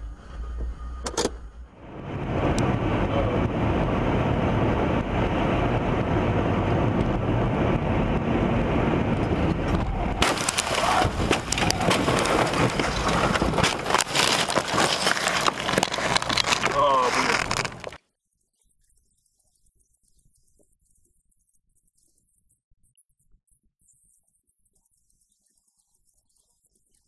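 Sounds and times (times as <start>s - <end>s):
car engine and road noise: 0.0s - 18.0s
crackle of clicks and knocks: 9.1s - 27.0s.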